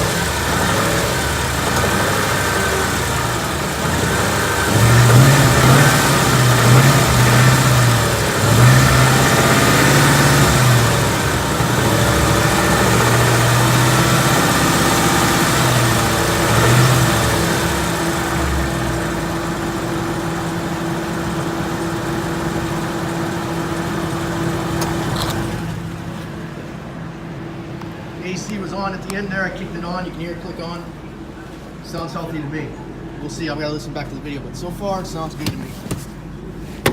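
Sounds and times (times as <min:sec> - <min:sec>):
car engine idling: 0:00.0 - 0:35.5
compressor clutch click: 0:24.7 - 0:25.8.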